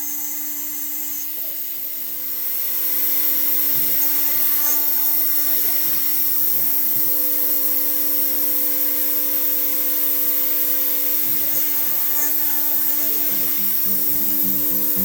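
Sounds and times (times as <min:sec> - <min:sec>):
milling spindle humming: 0:00.0 - 0:15.0
background music: 0:13.3 - 0:15.0.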